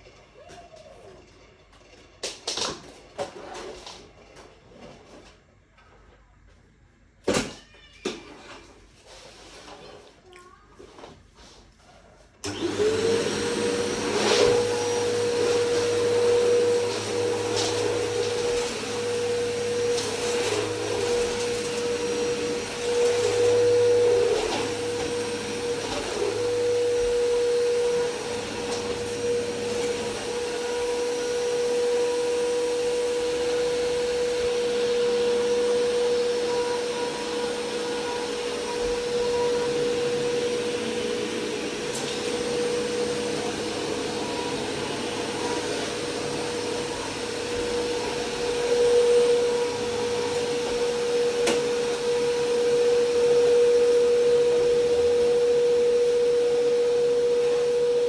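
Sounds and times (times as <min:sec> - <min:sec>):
vacuum cleaner running: 0:12.4 - 0:58.0.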